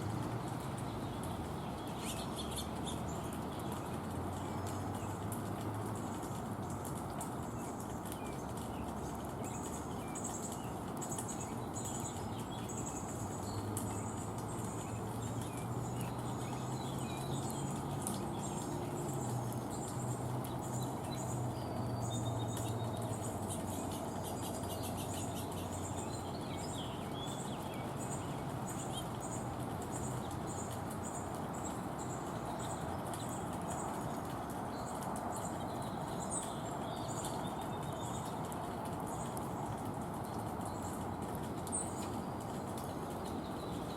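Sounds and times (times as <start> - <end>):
birds chirping: 0.0 - 43.9
small birds calling: 0.0 - 43.9
steady background hiss: 0.0 - 43.9.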